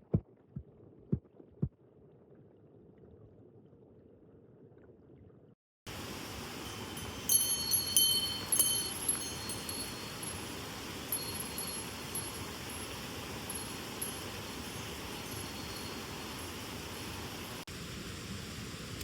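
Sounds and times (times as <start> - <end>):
mountain stream water rushing: 5.9 - 18.0
metallic chiming: 6.2 - 17.6.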